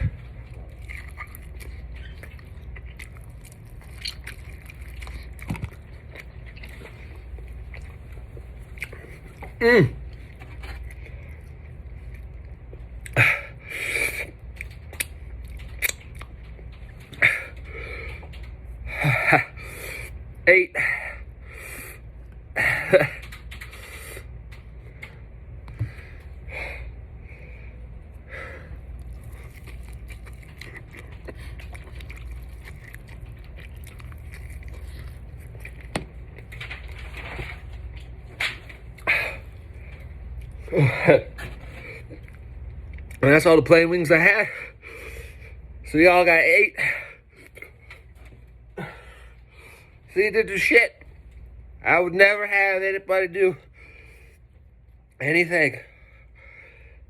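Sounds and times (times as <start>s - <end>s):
person chewing: 0.0s - 13.2s, 13.8s - 18.6s, 28.5s - 43.2s
steady low hum: 0.0s - 57.0s
breathing: 17.2s - 18.4s, 24.9s - 28.8s, 44.5s - 45.6s, 48.8s - 50.0s, 53.6s - 54.5s, 55.8s - 57.0s.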